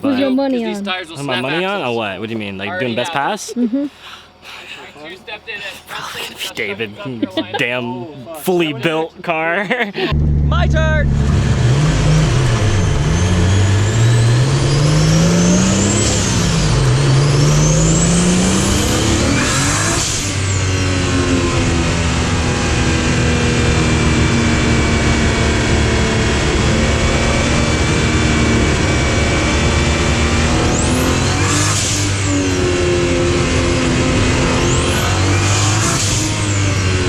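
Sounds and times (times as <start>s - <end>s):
car engine accelerating through gears: 10.1s - 37.0s.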